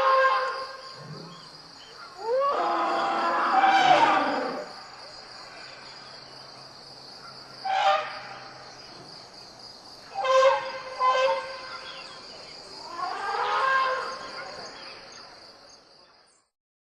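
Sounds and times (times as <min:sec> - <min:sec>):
animal calls: 0:00.0 - 0:04.8, 0:10.1 - 0:14.8
high insect drone: 0:00.0 - 0:16.4.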